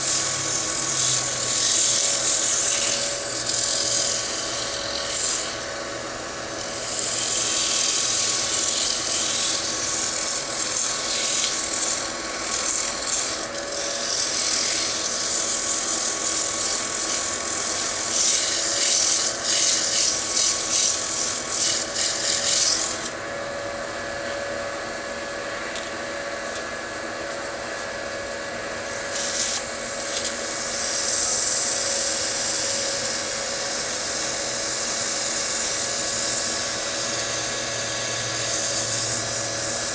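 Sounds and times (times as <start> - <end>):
wood lathe humming: 0.0 - 24.1, 28.2 - 39.9.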